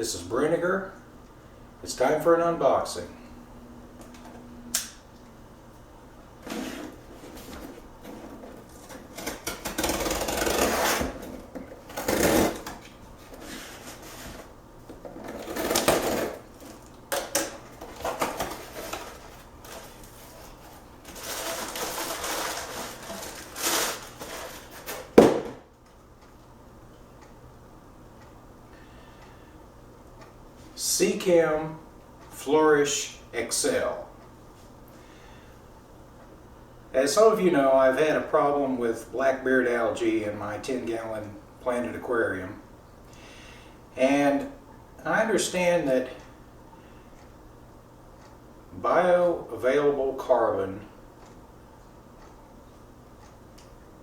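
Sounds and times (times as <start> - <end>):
cardboard box scraping and tearing: 9.3 - 11.3, 12.0 - 12.7, 21.1 - 25.0
sharp knock: 25.2 - 25.7.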